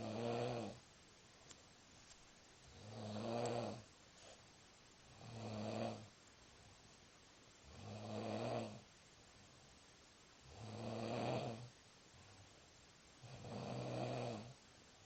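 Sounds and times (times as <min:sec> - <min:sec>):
man snoring: 0:00.0 - 0:00.8, 0:02.8 - 0:03.8, 0:05.2 - 0:06.1, 0:07.7 - 0:08.8, 0:10.5 - 0:11.7, 0:13.3 - 0:14.6.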